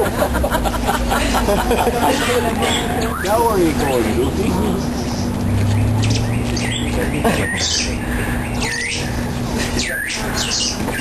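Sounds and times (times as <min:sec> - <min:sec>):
steady low hum: 0:00.0 - 0:11.0
birds squawking: 0:02.3 - 0:11.0.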